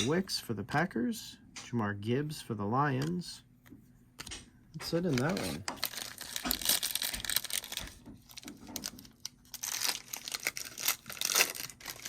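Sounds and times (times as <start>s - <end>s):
foil wrapper crinkling and tearing: 4.9s - 12.0s.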